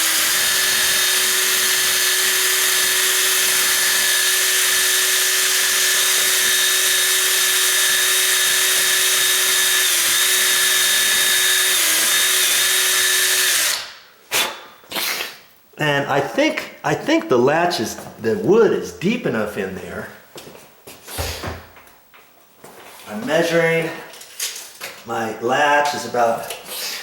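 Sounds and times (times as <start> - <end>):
electric drill reaming wood: 0.0 - 14.0.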